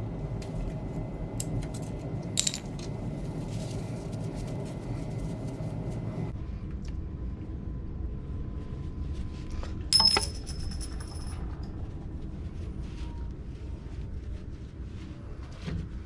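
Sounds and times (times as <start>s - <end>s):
steady low hum: 0.0s - 16.0s
metal part clinking on metal: 10.0s - 11.3s.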